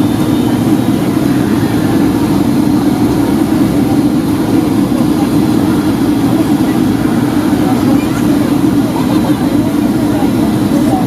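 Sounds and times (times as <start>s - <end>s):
airplane cabin noise: 0.0s - 11.0s.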